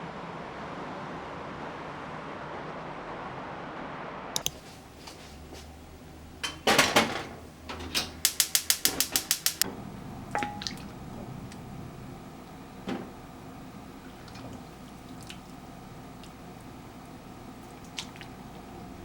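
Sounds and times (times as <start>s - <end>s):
small objects clicking: 8.2s - 9.6s.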